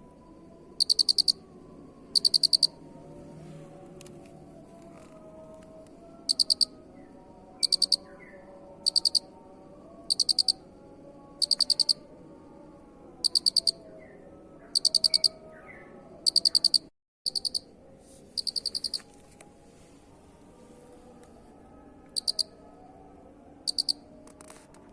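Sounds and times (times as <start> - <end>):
cricket chirping: 0.0 - 3.4, 6.1 - 14.0, 14.6 - 15.5, 16.2 - 17.7, 18.4 - 19.1, 22.2 - 22.6, 23.6 - 24.1
faint low murmur: 2.7 - 7.5, 19.0 - 24.9.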